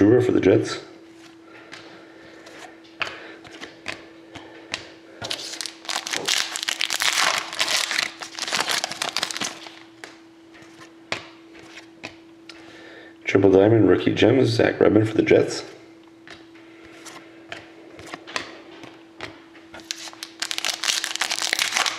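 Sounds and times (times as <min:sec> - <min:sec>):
steady hum: 0:00.0 - 0:21.9
cards being handled: 0:01.2 - 0:12.2, 0:16.3 - 0:21.9
card pack wrappers crinkling: 0:05.3 - 0:09.9, 0:19.8 - 0:21.9.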